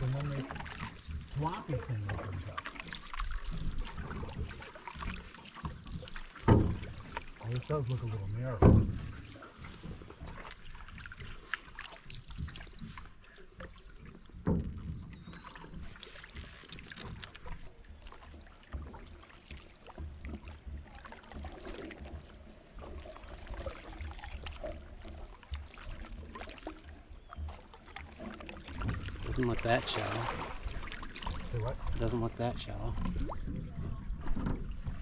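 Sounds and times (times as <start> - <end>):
paddles dipping through water: 0.0 - 35.0
water splashes and drips: 0.0 - 35.0
knock on aluminum canoe: 6.4 - 7.0, 8.5 - 9.2.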